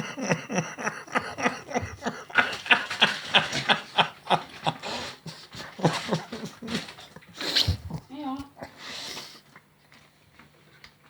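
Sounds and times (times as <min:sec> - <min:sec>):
man laughing: 0:00.0 - 0:07.2.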